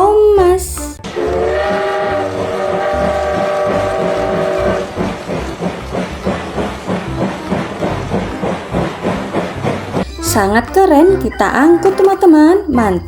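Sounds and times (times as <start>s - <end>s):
steam train chuffing: 0.6s - 12.5s
steam train whistle: 1.0s - 5.6s.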